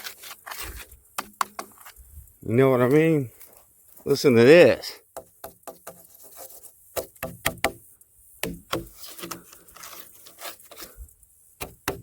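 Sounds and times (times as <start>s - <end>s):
hollow knocks on log: 7.0s - 7.8s, 8.4s - 9.4s, 11.6s - 12.0s.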